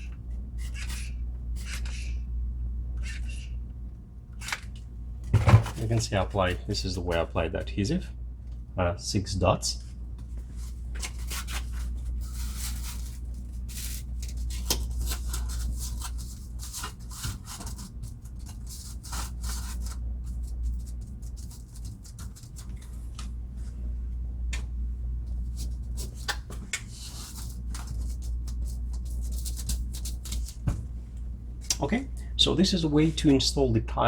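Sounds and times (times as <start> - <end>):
foam tile scratching and scuffing: 10.2 - 23.2, 25.3 - 30.8.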